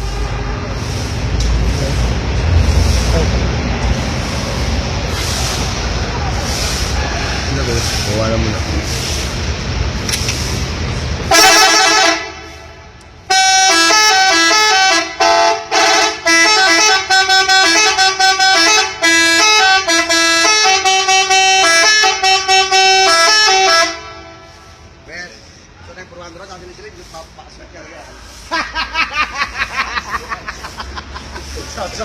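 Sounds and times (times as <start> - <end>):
bus air horn playing a tune: 0.0 - 0.9, 11.3 - 24.8.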